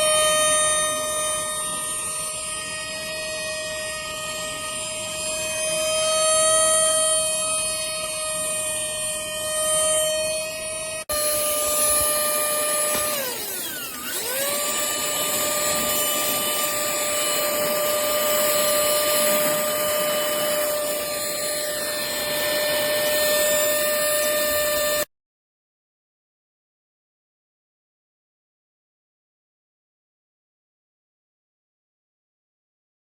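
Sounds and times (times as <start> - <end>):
handheld vacuum motor whining: 0.0 - 25.1.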